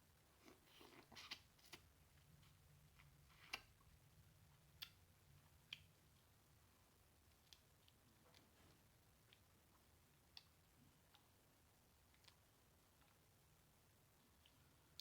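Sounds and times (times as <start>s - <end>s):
mouth eating clicks and smacks: 4.6s - 6.3s, 7.2s - 8.5s.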